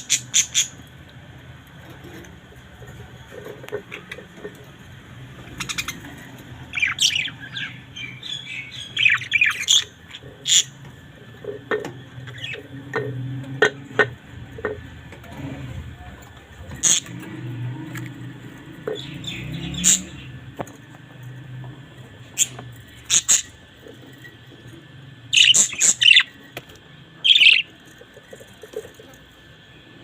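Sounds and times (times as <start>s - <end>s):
budgerigars chirping and chattering: 0.0s - 0.8s, 5.4s - 20.8s, 22.2s - 29.2s.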